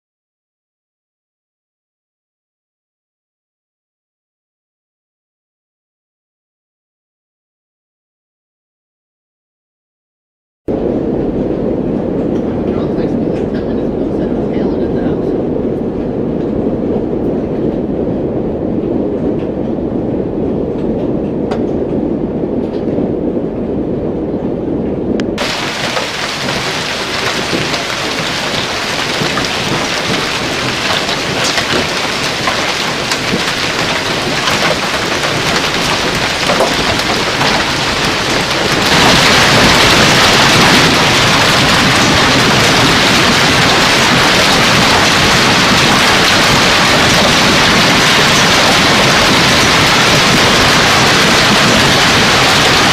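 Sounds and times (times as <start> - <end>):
low muffled rumble: 10.7 - 52.9
hail and rain pattering: 25.4 - 52.9.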